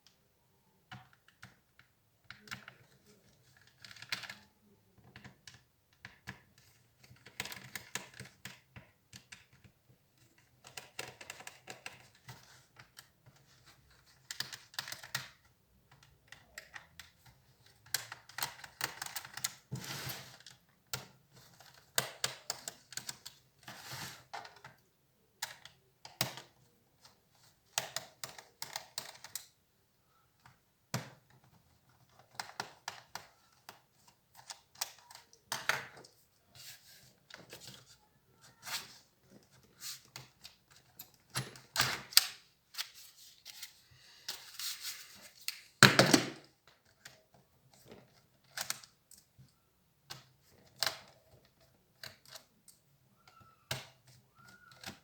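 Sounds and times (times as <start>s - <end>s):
clicks and rattles of parts: 45.4s - 49.4s.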